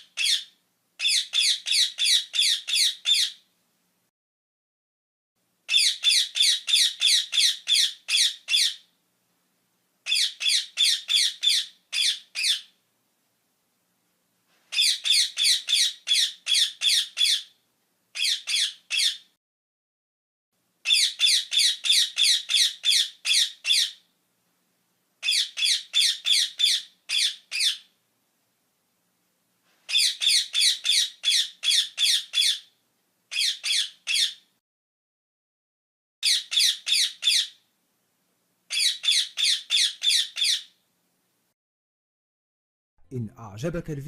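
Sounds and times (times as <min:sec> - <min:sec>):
parrot squawking: 0:00.0 - 0:03.4, 0:05.7 - 0:08.9, 0:10.0 - 0:12.8, 0:14.7 - 0:17.6, 0:18.2 - 0:19.3, 0:20.8 - 0:24.0, 0:25.2 - 0:27.9, 0:29.9 - 0:32.7, 0:33.3 - 0:34.5, 0:36.2 - 0:37.6, 0:38.7 - 0:40.8.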